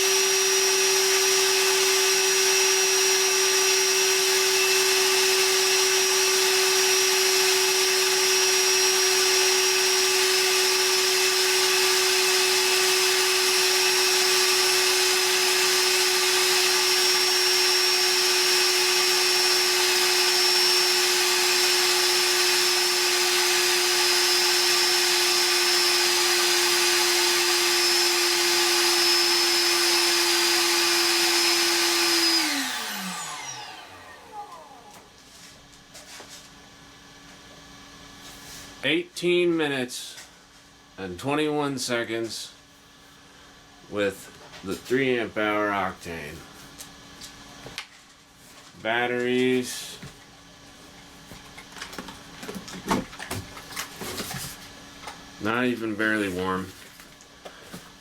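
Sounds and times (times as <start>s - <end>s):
vacuum motor whining: 0.0s - 35.2s.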